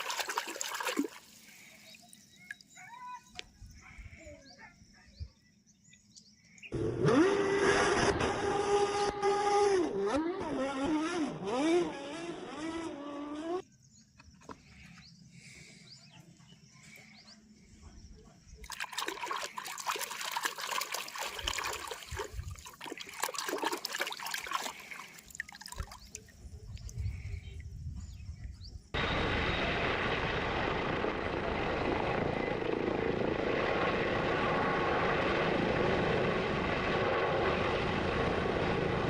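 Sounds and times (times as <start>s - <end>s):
steady rushing water: 0.0s - 1.7s, 18.7s - 26.2s
water splashing and trickling: 0.0s - 2.8s, 18.6s - 27.6s.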